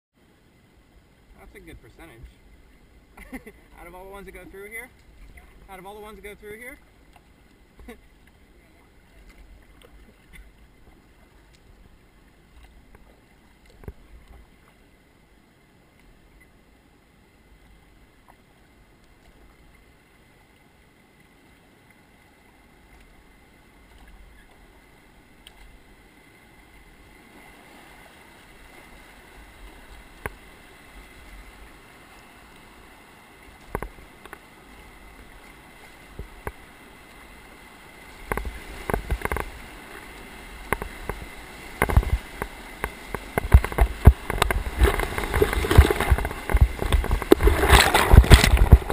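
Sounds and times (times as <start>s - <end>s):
river water running: 0.2s - 48.9s
wind rumble on microphone: 40.7s - 48.9s.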